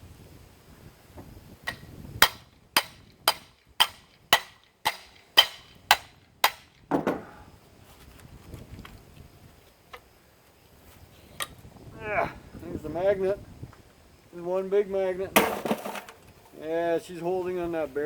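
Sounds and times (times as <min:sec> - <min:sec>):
dull clunk: 0:06.9 - 0:07.4.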